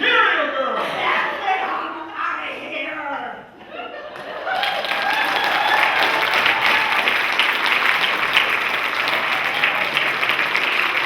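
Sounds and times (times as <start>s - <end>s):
audience applauding: 4.5s - 11.0s.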